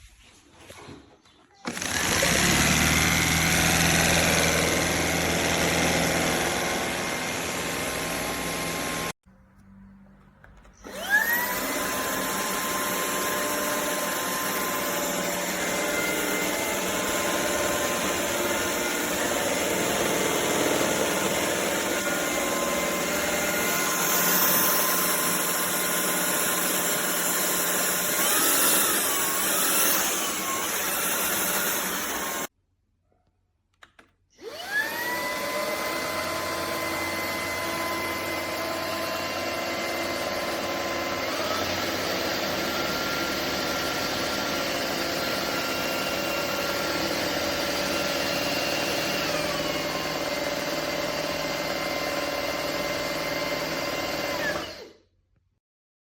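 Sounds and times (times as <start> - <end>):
vacuum motor whine: 10.7 - 32.5, 34.4 - 54.9.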